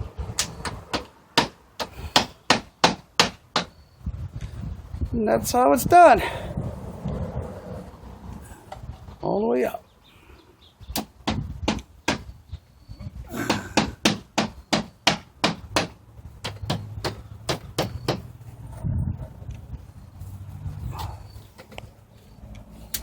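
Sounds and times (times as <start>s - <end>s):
hammer striking nails: 0.4s - 3.8s, 10.9s - 12.3s, 13.4s - 18.3s.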